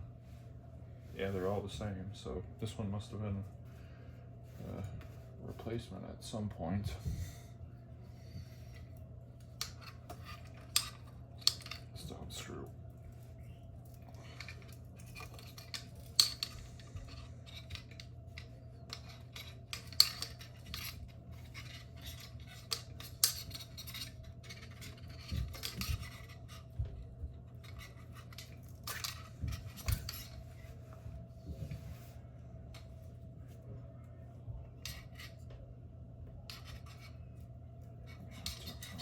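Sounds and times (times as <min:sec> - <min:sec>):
metal clicks and scrapes: 0:14.0 - 0:26.7.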